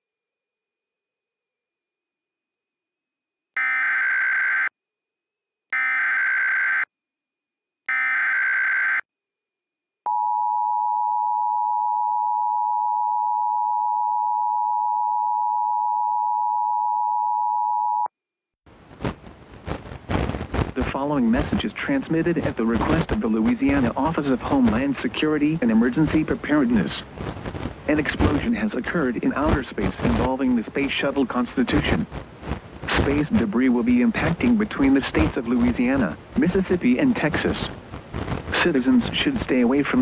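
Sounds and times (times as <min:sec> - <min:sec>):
noise: 0:18.7 - 0:40.0
data burst tones: 0:18.9 - 0:40.0.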